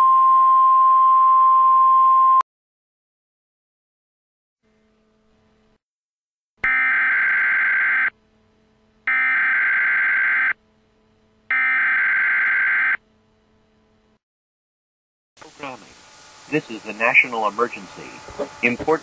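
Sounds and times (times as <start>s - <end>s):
faint low hum: 8.1s - 9.1s, 10.6s - 11.5s, 13.0s - 14.2s.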